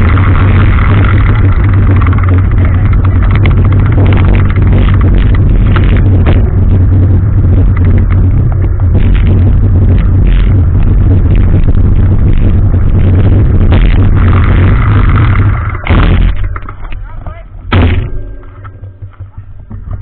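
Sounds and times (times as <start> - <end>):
vehicle running with low rumble: 0.0 - 20.0.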